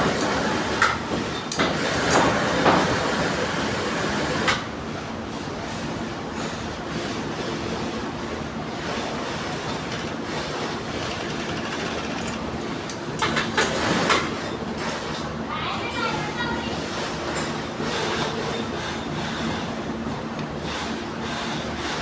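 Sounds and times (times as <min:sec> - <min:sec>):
sewing machine whirring: 0:09.4 - 0:14.2
sewing machine clicks: 0:11.0 - 0:14.2.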